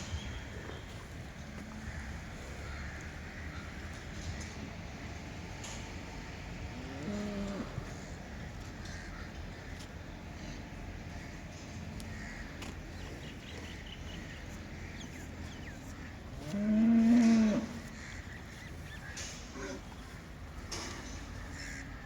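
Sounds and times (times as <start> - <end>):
low background noise: 0.0 - 22.0
cow mooing: 6.7 - 8.0, 16.4 - 18.0.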